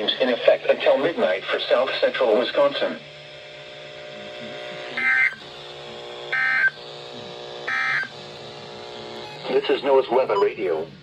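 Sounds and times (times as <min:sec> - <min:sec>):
digital data tone bursts: 0:06.3 - 0:06.8, 0:07.7 - 0:08.2, 0:09.2 - 0:10.8.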